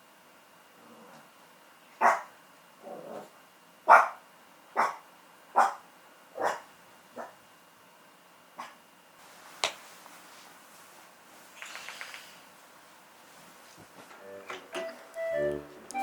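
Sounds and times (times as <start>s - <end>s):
small dog barking: 2.0s - 2.3s, 3.9s - 4.2s, 4.8s - 7.4s.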